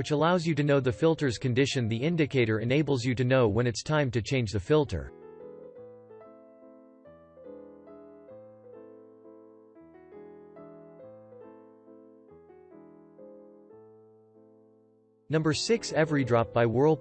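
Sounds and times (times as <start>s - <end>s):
soft electric piano chords: 5.1s - 17.0s.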